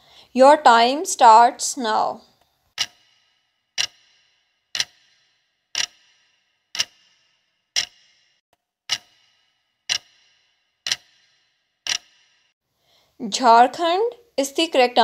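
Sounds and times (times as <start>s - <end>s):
clock ticks with ringing decay: 2.8s - 12.5s.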